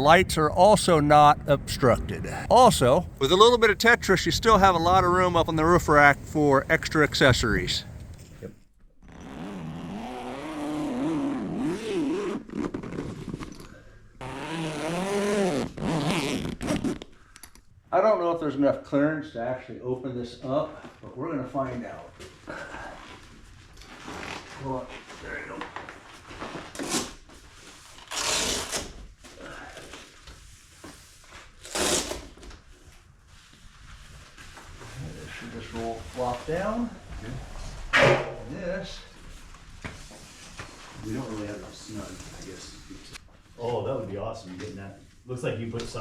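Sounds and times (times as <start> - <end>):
awning fabric scraping: 9.0 - 13.6
zipper being pulled open: 9.0 - 17.2, 28.0 - 29.0, 31.6 - 32.4.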